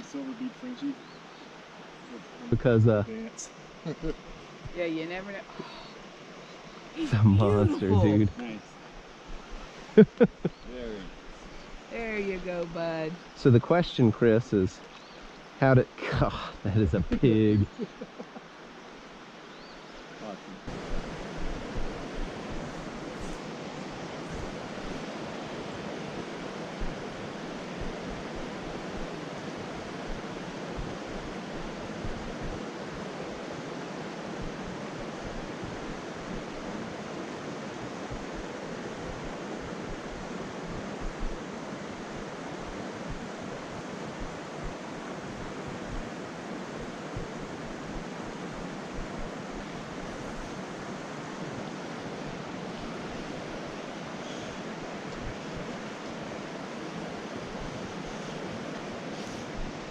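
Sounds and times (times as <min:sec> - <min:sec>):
river water flowing: 0:00.0 - 0:59.9
wind buffeting microphone: 0:20.6 - 0:53.7.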